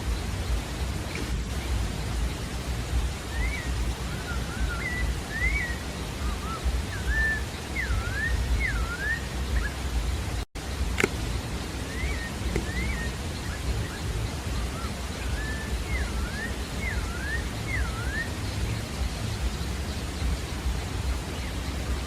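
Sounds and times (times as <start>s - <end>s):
bird singing whistled notes: 0.0s - 22.0s
low background rumble: 0.0s - 22.0s
click: 11.0s - 11.2s.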